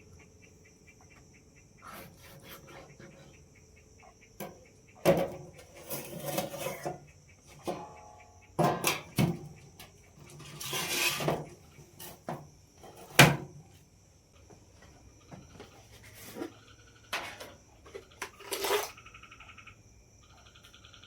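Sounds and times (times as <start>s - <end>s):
insect chirring: 0.0s - 21.0s
objects knocking and clattering: 4.4s - 7.0s, 7.6s - 13.6s.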